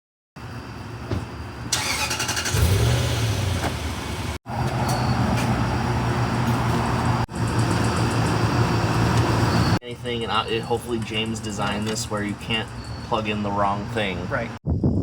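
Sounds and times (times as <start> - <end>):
car engine running: 1.6 - 4.4.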